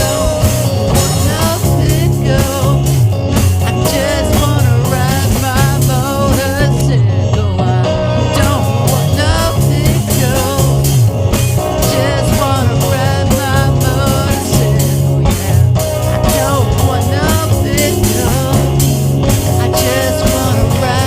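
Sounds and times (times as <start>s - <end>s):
rock band playing: 0.0s - 21.0s.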